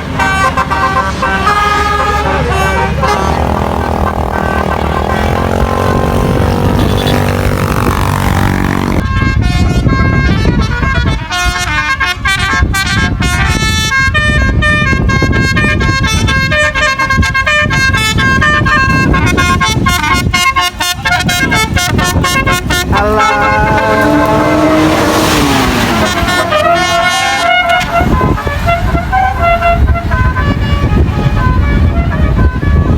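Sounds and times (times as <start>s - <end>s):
bus engines rumbling: 0.0s - 32.9s
multi-tone bus air horns: 0.0s - 32.9s.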